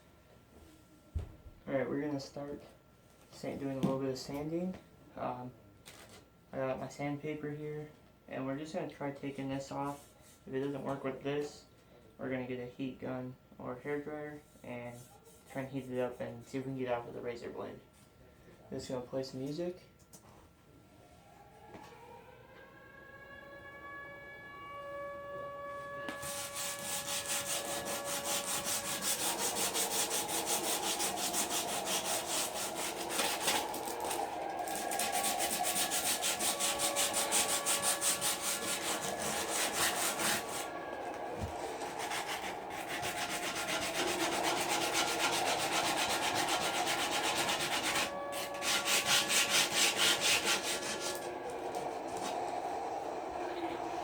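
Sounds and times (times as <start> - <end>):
sandpaper rubbing on metal: 26.1 - 40.8, 41.8 - 51.3.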